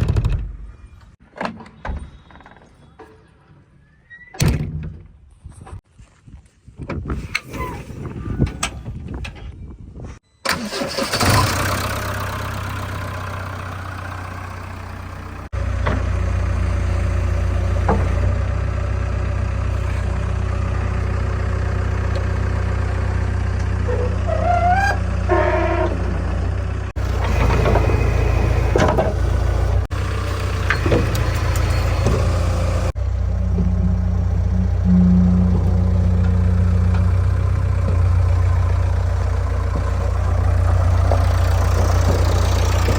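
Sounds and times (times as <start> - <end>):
diesel engine running: 10.5 - 42.9.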